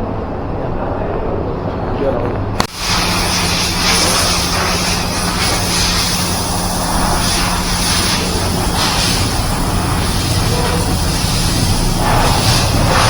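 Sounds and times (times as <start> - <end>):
loud even hiss: 2.6 - 13.0
low machine hum: 2.7 - 13.0.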